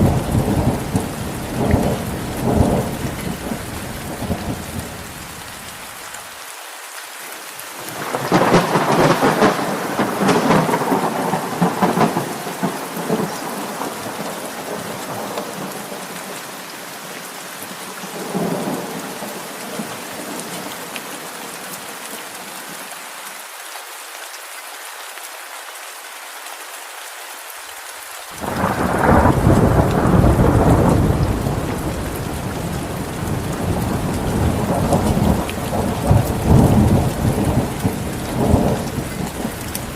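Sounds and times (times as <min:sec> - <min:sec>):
thunder rumbling: 0:00.0 - 0:05.2, 0:08.0 - 0:16.0, 0:28.4 - 0:39.9
rain falling: 0:00.0 - 0:39.9
thunder clap: 0:08.0 - 0:13.8, 0:28.4 - 0:39.9.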